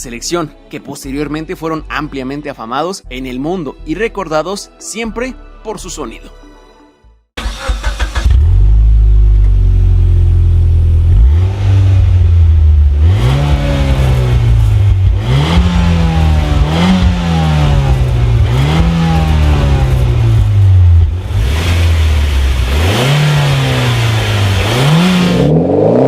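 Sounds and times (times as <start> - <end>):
car engine revving: 7.4 - 26.0.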